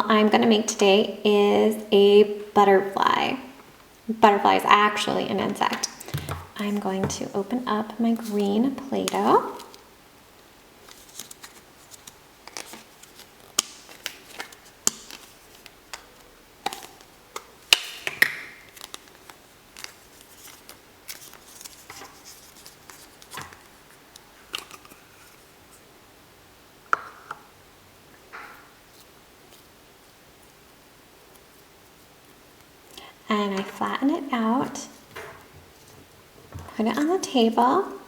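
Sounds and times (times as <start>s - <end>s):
plastic jar clicks and taps: 5.8s - 7.2s.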